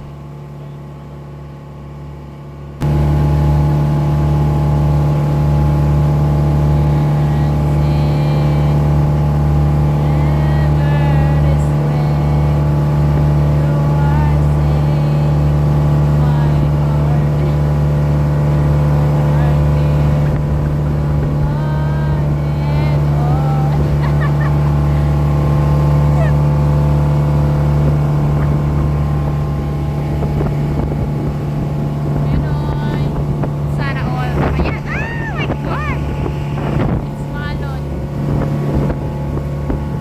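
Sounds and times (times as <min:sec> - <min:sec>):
boat engine drone: 0:00.0 - 0:40.0
faint voices: 0:33.7 - 0:37.9.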